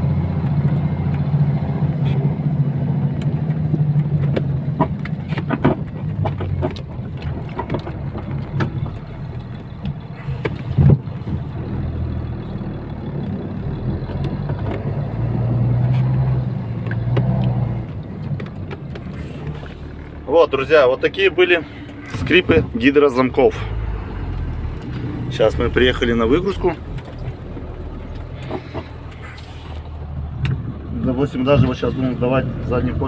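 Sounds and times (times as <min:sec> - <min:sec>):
diesel engine droning: 0:00.0 - 0:33.0
creaks and knocks from cab locks: 0:03.7 - 0:11.5.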